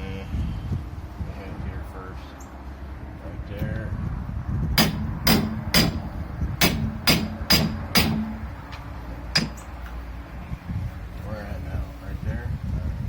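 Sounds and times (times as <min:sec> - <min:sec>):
hammer striking steel: 0:04.8 - 0:08.6, 0:09.3 - 0:09.7.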